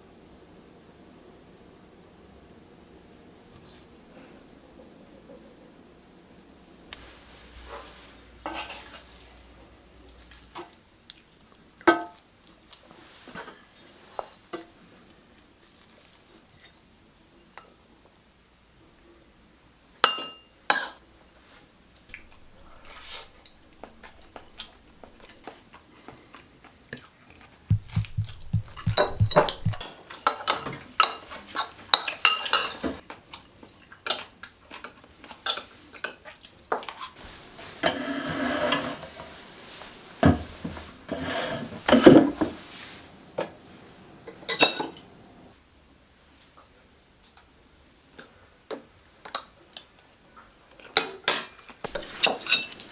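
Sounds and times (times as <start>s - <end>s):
cutlery clinking against dishes: 20.1s - 21.0s, 51.0s - 52.9s.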